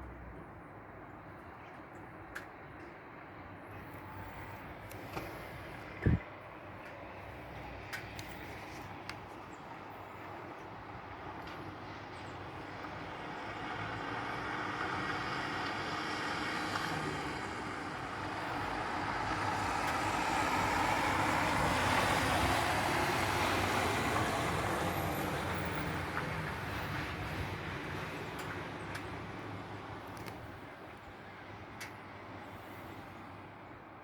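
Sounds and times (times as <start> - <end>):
vehicle passing: 13.2 - 29.7.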